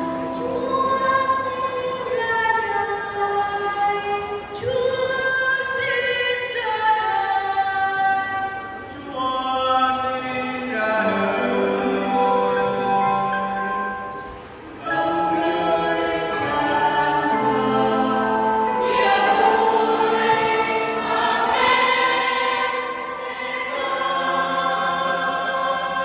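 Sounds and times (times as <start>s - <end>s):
church choir singing a carol: 9.9s - 26.0s.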